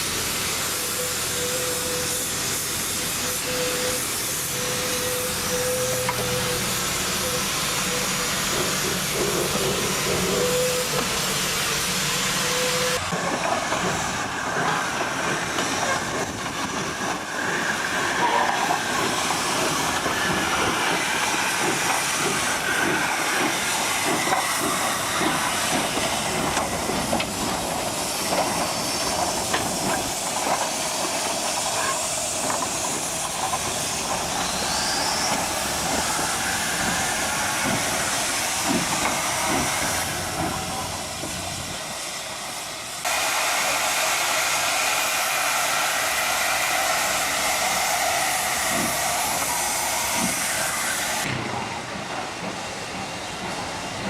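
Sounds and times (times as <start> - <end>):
steam locomotive hissing: 0.0 - 54.0.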